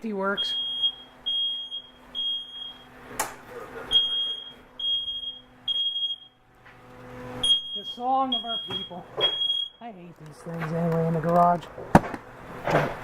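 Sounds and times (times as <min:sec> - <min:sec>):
electronic alarm beeping: 0:00.3 - 0:03.0, 0:03.9 - 0:06.4, 0:07.3 - 0:09.9.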